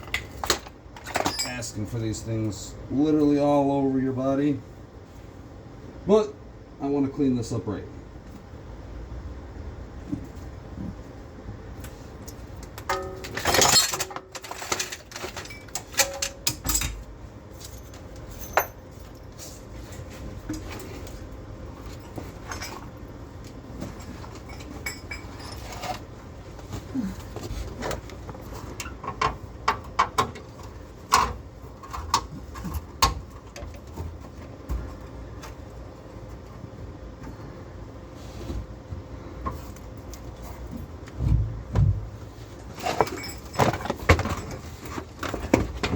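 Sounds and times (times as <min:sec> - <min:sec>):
metal parts clattering: 0:00.1 - 0:01.6, 0:12.9 - 0:18.8, 0:23.9 - 0:26.1, 0:42.7 - 0:45.9
metal tools clinking and knocking: 0:00.1 - 0:01.7, 0:12.8 - 0:19.2, 0:21.9 - 0:23.0, 0:23.8 - 0:26.1, 0:42.8 - 0:45.9.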